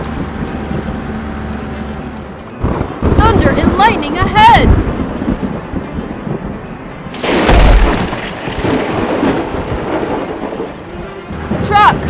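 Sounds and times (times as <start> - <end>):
thunderclap with deep rumble: 2.6 - 6.6, 7.2 - 10.9.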